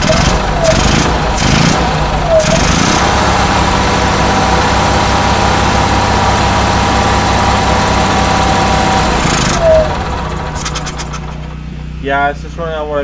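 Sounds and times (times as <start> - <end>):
generator engine running: 0.0 - 13.0.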